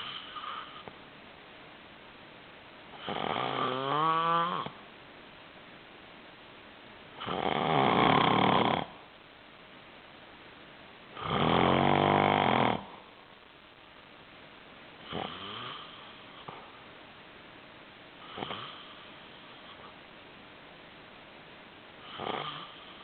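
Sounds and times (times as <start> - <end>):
person snoring loudly: 3.0 - 4.8, 7.2 - 9.0, 11.2 - 13.0, 15.1 - 16.0, 22.0 - 23.0.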